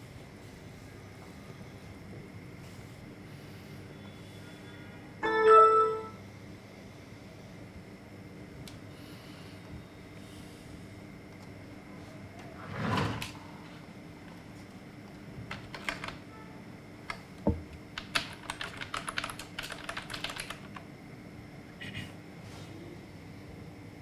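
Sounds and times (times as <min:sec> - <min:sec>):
typing on computer keyboard: 0:15.5 - 0:16.2, 0:18.0 - 0:20.9.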